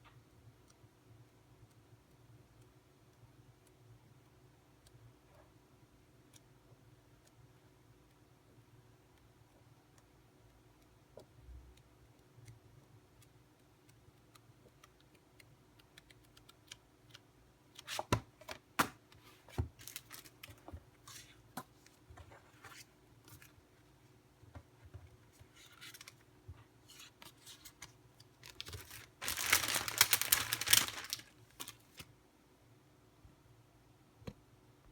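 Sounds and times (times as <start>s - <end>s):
packaging clicks and rustling: 19.6s - 21.3s, 27.3s - 32.1s
packaging tearing: 28.5s - 32.0s.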